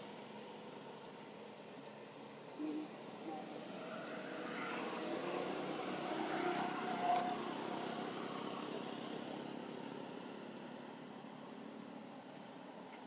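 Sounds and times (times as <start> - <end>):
vehicle passing on a road: 3.2 - 10.8.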